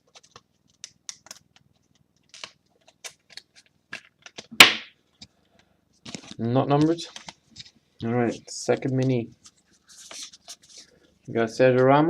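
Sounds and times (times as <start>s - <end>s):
sharp loud snap: 4.6s - 5.0s.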